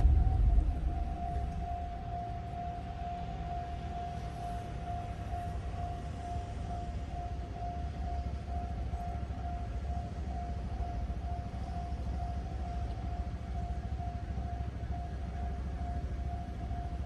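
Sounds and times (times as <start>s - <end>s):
low rumble: 0.0s - 5.9s
level crossing warning bell: 0.0s - 17.0s.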